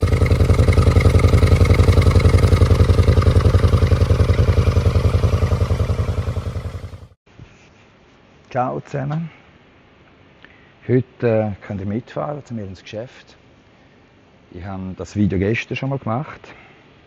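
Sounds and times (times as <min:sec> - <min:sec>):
motorcycle engine running: 0:00.0 - 0:07.2.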